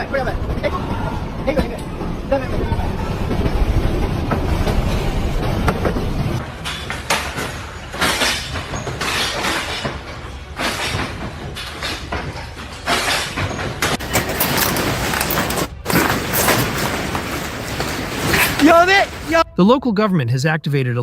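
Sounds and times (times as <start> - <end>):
rattling and clattering: 3.2 - 19.3.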